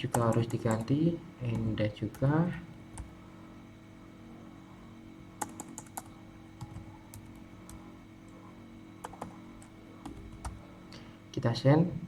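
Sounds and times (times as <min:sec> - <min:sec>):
faint steady hum: 0:00.0 - 0:12.0
computer keyboard keystrokes: 0:05.4 - 0:07.8, 0:09.0 - 0:09.4.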